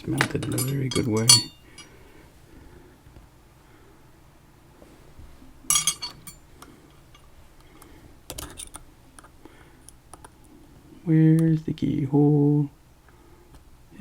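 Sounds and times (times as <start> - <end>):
metal clinking of lock-picking tools: 0.0 - 1.9, 5.7 - 6.4.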